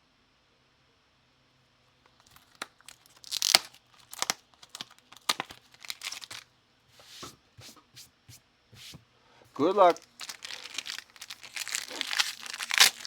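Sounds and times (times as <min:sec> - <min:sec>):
foil wrappers tearing and crinkling: 0:02.1 - 0:06.4, 0:09.6 - 0:13.0.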